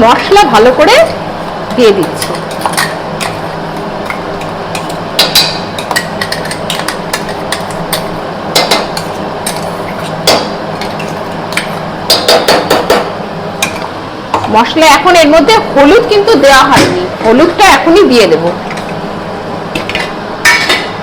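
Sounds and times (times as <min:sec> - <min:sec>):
metal spoon knocking on a pan: 0:12.1 - 0:13.1.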